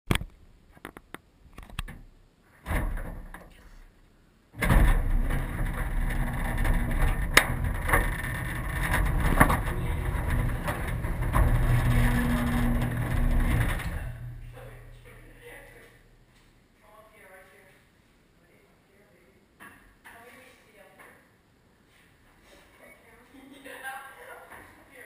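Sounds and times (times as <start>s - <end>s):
garage door rumbling and rattling: 1.7s - 3.8s, 4.6s - 16.2s
garage door clanks: 2.6s - 3.6s, 4.6s - 16.0s.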